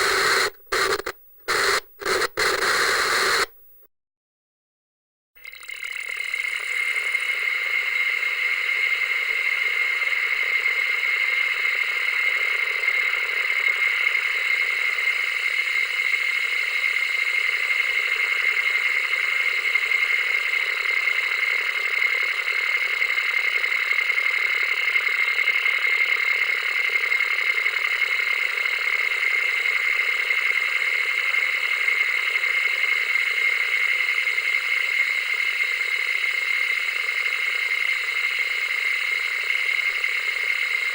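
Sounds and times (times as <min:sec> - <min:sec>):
television static hiss and crackle: 0:00.0 - 0:03.6.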